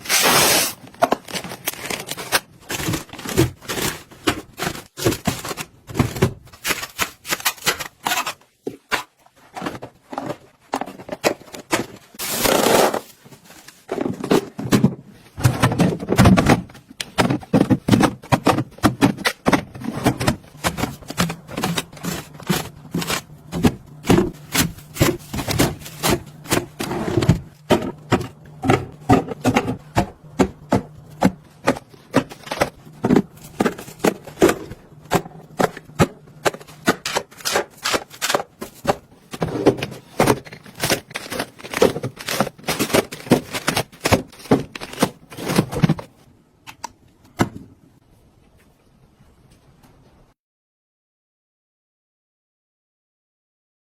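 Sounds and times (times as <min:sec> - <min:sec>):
containers knocking and scraping: 0:13.8 - 0:46.2.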